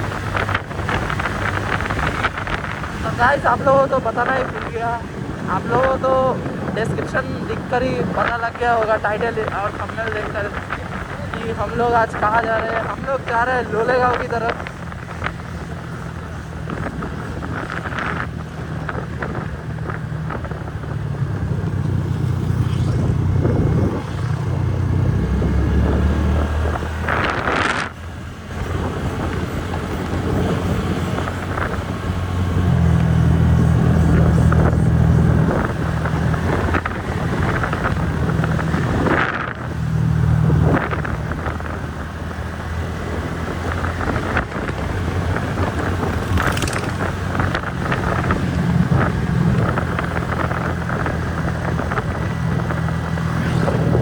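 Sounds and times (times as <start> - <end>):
wind noise on microphone: 0.0 - 54.0
scooter engine running: 40.6 - 54.0.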